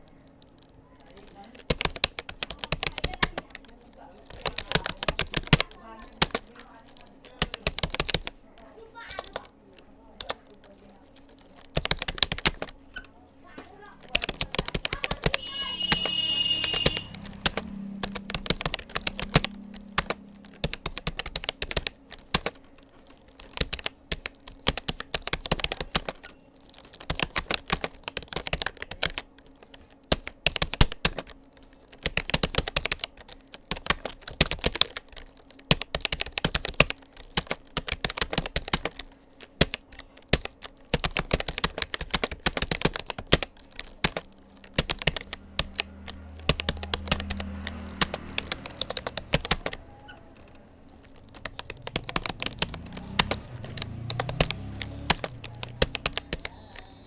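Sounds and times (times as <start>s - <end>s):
keyboard key clicks: 11.3s - 13.1s, 14.0s - 22.6s, 35.7s - 57.0s.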